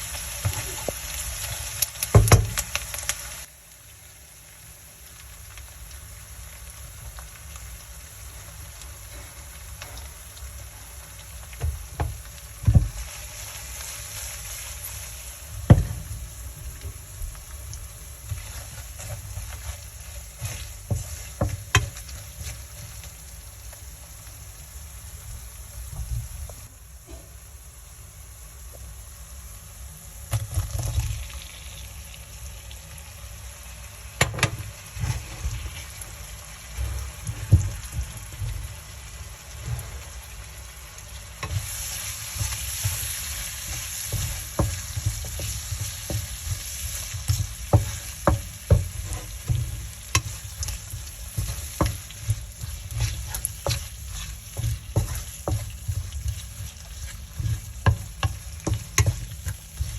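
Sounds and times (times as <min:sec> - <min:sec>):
food frying in a pan: 0:00.0 - 0:59.9
spoon knocking against pan: 0:43.7 - 0:59.9.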